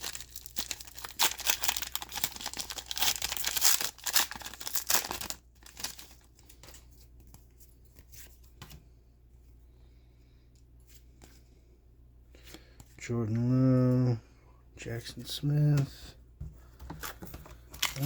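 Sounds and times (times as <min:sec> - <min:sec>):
wrapper tearing and crinkling: 0:00.0 - 0:06.2, 0:17.8 - 0:18.0.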